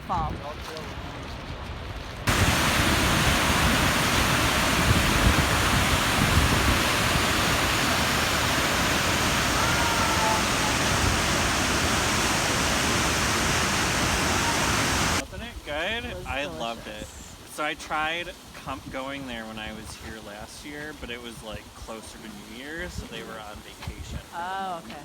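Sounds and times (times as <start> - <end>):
waterfall roaring: 2.3 - 15.2.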